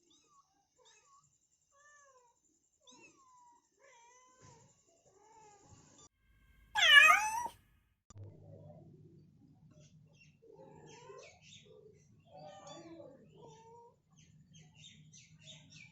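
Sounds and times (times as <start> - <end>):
cat calling: 6.8 - 7.5
cat meowing loudly: 6.8 - 7.5.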